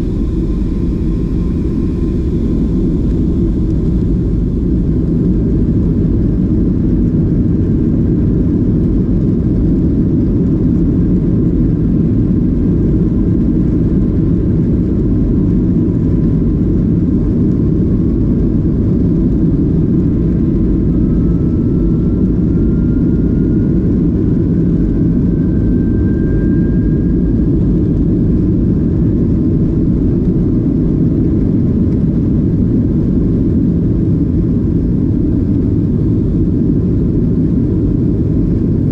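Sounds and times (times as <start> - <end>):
faint rising whine: 0.0 - 9.2, 16.6 - 30.7
jet engine cabin rumble: 0.0 - 38.9.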